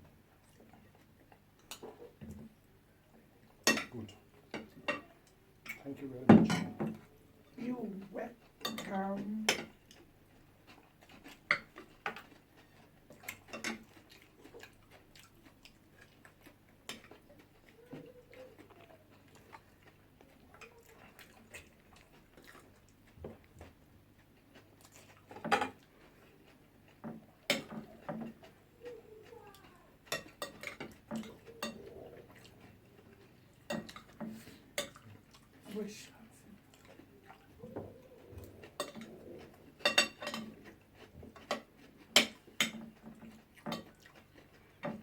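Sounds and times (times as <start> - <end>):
cutlery clinking on plates: 3.6 - 7.1, 8.6 - 9.9, 11.4 - 12.4, 13.1 - 14.7, 25.3 - 25.8, 26.9 - 28.6, 30.1 - 32.0, 33.5 - 35.0, 37.7 - 44.1.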